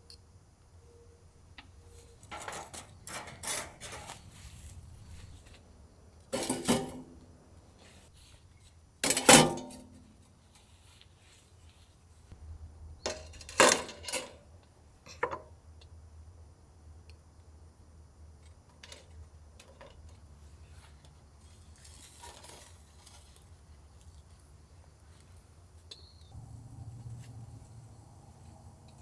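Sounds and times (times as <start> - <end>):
metal cookware clinking: 2.2 - 4.2, 6.4 - 7.2, 9.1 - 9.8
low hum: 26.4 - 29.0.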